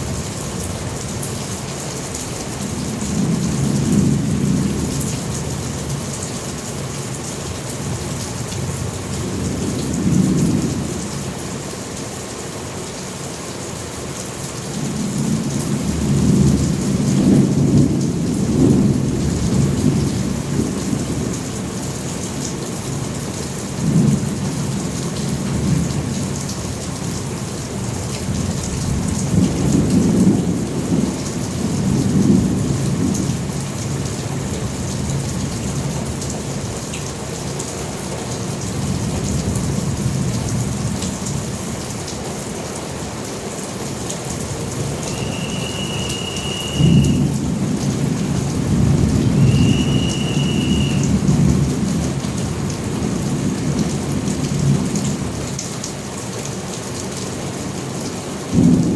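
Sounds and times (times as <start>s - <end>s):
steady rain: 0.0s - 58.9s
thunder rumbling: 44.5s - 54.9s, 58.5s - 58.9s.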